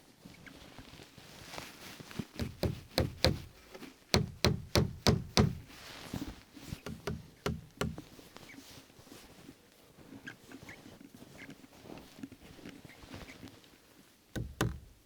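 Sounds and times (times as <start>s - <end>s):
sharp knocks: 2.4s - 3.6s, 4.2s - 5.7s, 6.9s - 8.1s, 14.4s - 15.0s.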